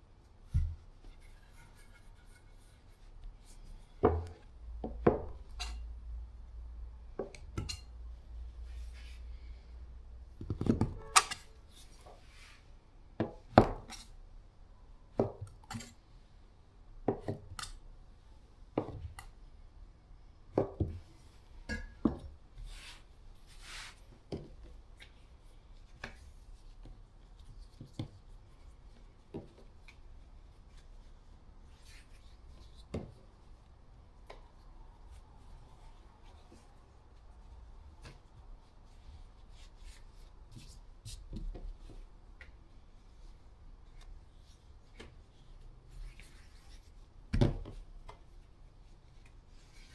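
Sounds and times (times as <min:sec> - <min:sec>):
soft rubbing of dough: 0:00.0 - 0:04.6, 0:08.1 - 0:10.0, 0:11.6 - 0:13.1, 0:22.3 - 0:49.9.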